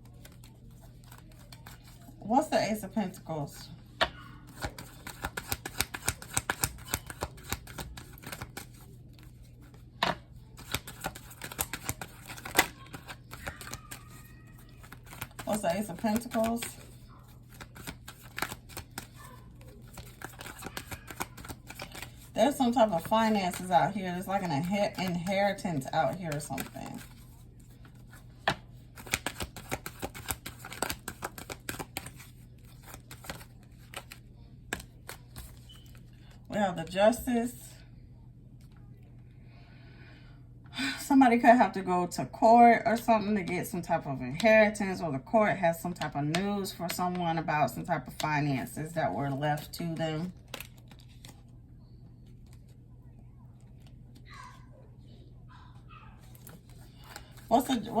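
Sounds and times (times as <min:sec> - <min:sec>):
cards shuffling with crisp clicks: 0:00.0 - 0:02.1, 0:04.0 - 0:36.4, 0:49.6 - 0:51.6, 0:53.6 - 0:54.2, 0:56.2 - 0:57.9
cards rustling: 0:00.0 - 0:02.2, 0:04.0 - 0:36.4, 0:49.6 - 0:51.6, 0:56.2 - 0:58.0.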